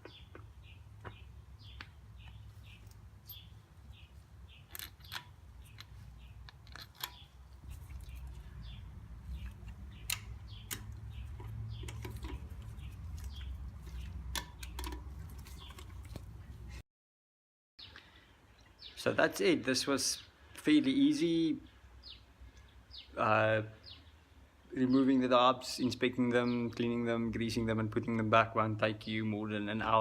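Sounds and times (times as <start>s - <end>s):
small birds chirping: 0.0s - 16.8s, 17.8s - 28.2s
hand tools clicking and knocking: 4.7s - 7.3s, 9.3s - 13.1s, 14.0s - 16.0s.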